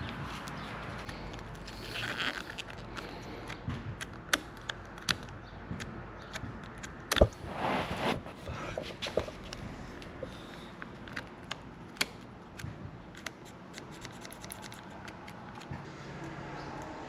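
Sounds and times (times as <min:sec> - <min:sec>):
scraping rustle: 0:07.4 - 0:09.4
small plastic parts clicking: 0:10.8 - 0:16.4.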